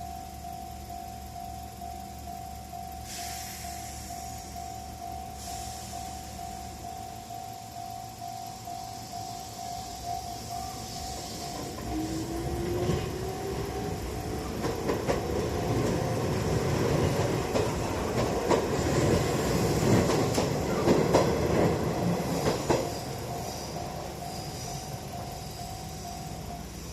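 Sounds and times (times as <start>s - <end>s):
level-crossing warning bell: 0.0s - 26.9s
train motor whine: 0.0s - 26.9s
train wheels clacking over rail joints: 11.2s - 24.9s.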